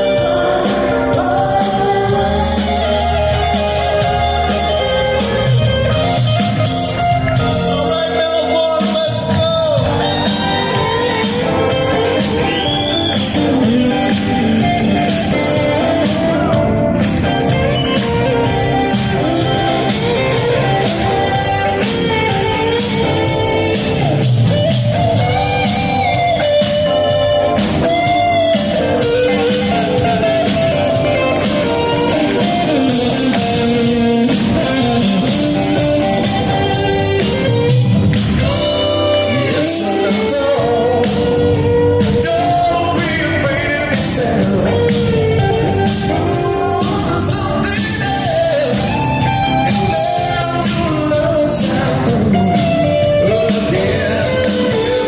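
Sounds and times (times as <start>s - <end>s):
person singing: 0.0s - 5.6s, 38.3s - 55.0s
guitar: 0.0s - 55.0s
steady drum beat: 0.0s - 55.0s.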